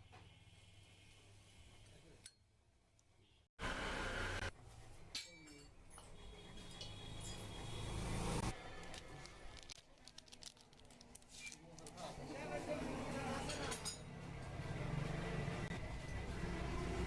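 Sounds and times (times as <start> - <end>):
metal tools clinking: 5.1 - 7.6, 13.5 - 14.2.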